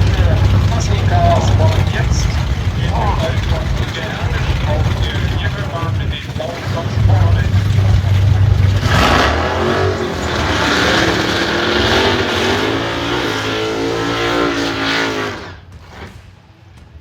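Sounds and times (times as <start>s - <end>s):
drag racing cars at full throttle: 0.0s - 16.4s.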